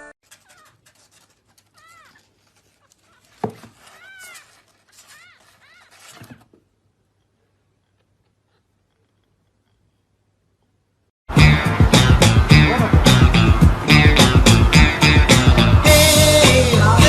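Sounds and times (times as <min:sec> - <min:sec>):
cat meowing: 0:01.7 - 0:06.2.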